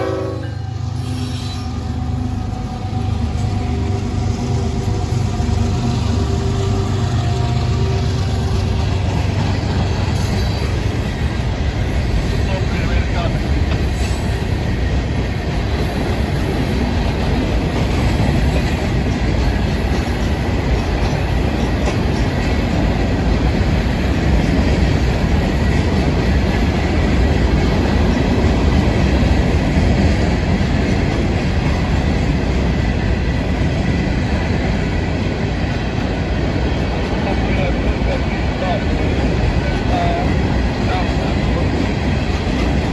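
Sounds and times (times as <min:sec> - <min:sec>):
freight train wheels rumbling on rails: 0:00.0 - 0:42.9
faint clickety-clack: 0:17.1 - 0:32.0.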